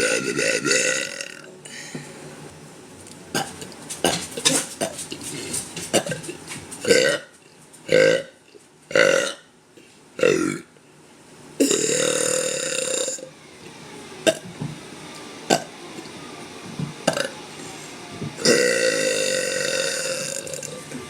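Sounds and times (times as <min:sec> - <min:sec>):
woman burping: 0:00.0 - 0:01.5, 0:10.2 - 0:10.6, 0:11.6 - 0:13.2, 0:18.4 - 0:20.6.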